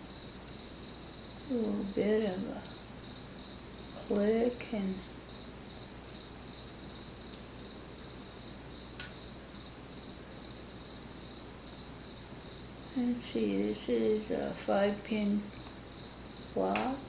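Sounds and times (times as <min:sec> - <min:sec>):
cricket chirping: 0:00.0 - 0:17.0.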